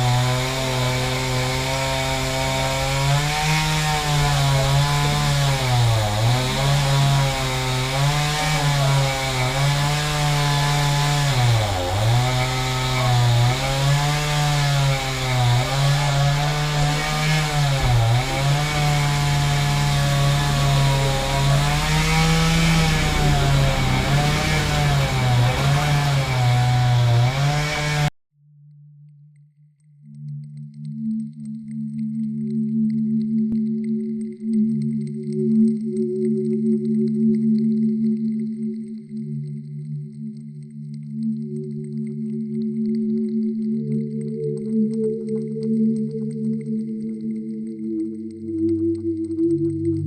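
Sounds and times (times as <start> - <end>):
chainsaw cutting a tree: 0.0 - 28.1.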